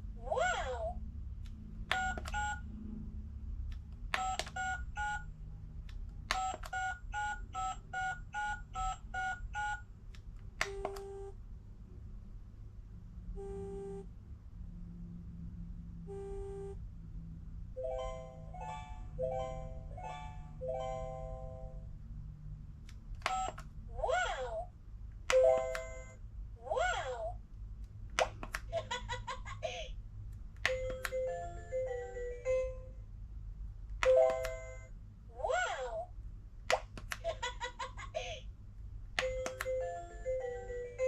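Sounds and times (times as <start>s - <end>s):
steady low hum: 0.0s - 41.0s
toy electronic beeps: 1.9s - 2.6s, 4.2s - 5.3s, 6.3s - 9.8s, 23.2s - 23.6s.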